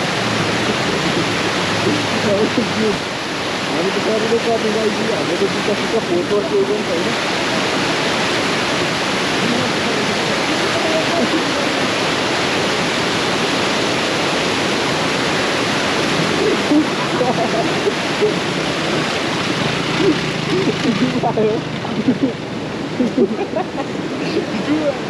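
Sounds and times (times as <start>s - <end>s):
river water rushing: 0.0s - 25.0s.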